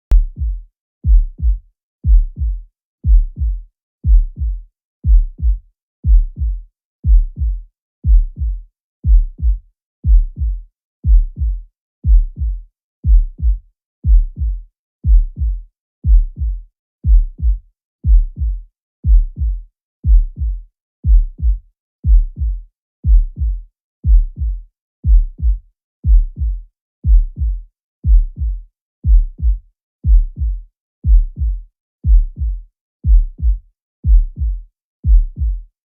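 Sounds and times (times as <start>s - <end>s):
heartbeat lub-dub: 0.0s - 35.7s.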